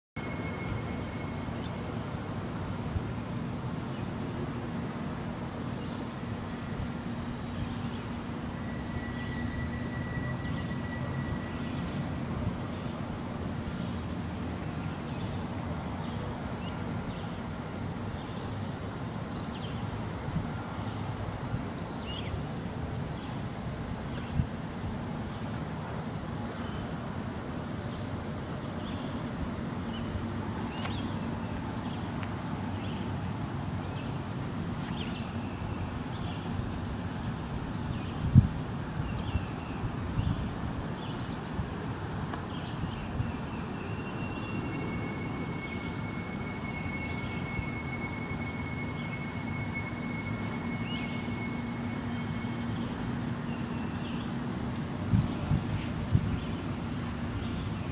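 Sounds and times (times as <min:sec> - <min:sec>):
steady high whine: 0:00.2 - 0:57.9
low droning hum: 0:41.4 - 0:57.9
bird chirps: 0:42.6 - 0:54.4.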